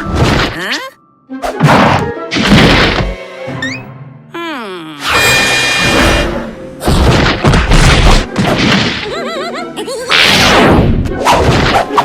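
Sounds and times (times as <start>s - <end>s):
cartoon crashes whacks and thuds: 1.5s - 3.2s, 6.8s - 9.1s, 10.1s - 12.0s.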